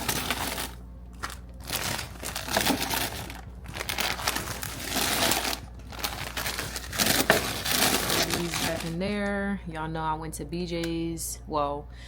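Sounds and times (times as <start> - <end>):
plastic snack packets crinkling: 0.0 - 9.0.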